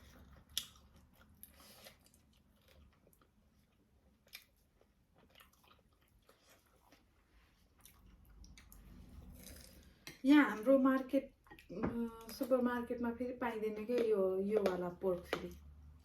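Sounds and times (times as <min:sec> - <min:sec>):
chewing crunchy food: 0:00.0 - 0:10.1.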